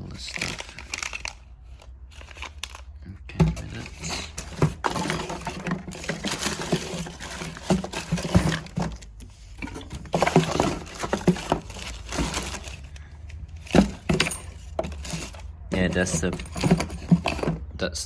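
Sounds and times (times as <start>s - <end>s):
packaging rustling and crinkling: 0.0s - 17.6s
small metal parts clinking: 3.6s - 17.6s.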